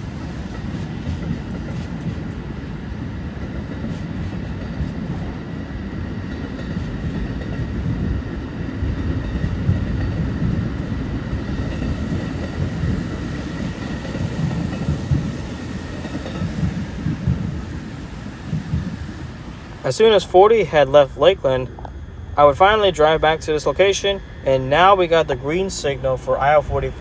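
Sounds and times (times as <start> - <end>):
passenger train rolling past: 0.0 - 27.0.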